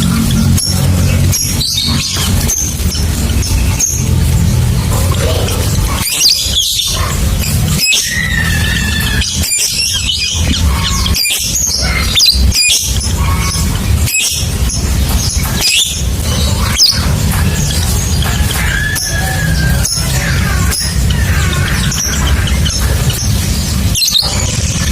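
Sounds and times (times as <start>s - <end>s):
loud low drone: 0.0s - 11.1s.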